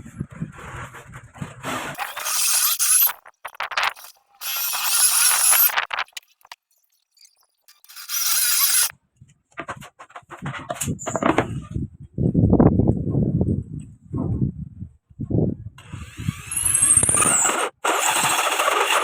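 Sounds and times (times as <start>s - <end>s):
circular saw cutting wood: 1.9s - 6.6s, 7.7s - 8.9s, 15.9s - 19.0s.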